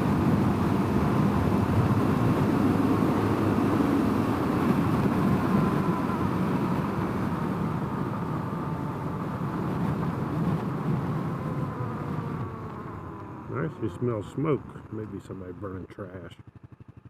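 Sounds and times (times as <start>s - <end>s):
wind rush on microphone: 0.0s - 13.4s
motorcycle engine running: 0.0s - 17.0s.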